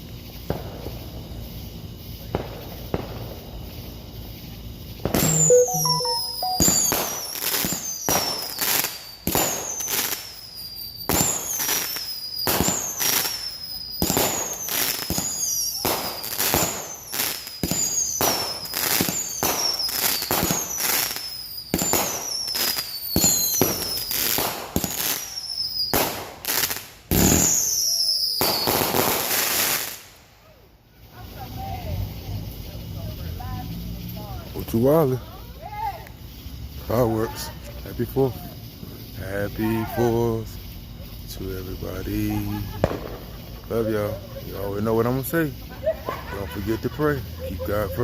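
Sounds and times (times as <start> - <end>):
whistling firework bangs: 6.8 - 30.2, 42.8 - 43.7.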